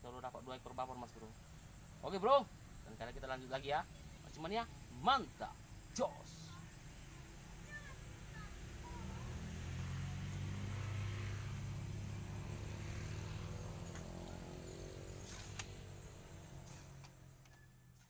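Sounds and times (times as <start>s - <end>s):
vehicle engine passing by: 6.9s - 17.4s.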